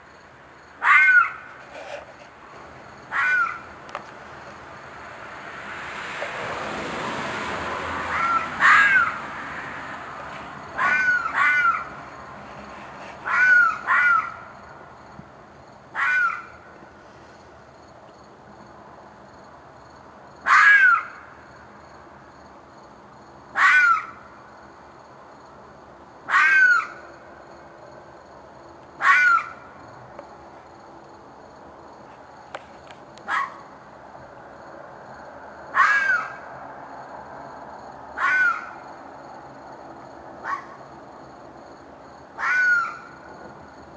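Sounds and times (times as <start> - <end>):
animal screeching cries: 0.8 - 1.5, 3.1 - 3.7, 8.1 - 9.3, 10.8 - 12.0, 13.2 - 14.5, 16.0 - 16.5, 20.5 - 21.2, 23.6 - 24.2, 26.3 - 27.0, 29.0 - 29.6, 35.7 - 36.4, 38.2 - 38.8, 42.4 - 43.1.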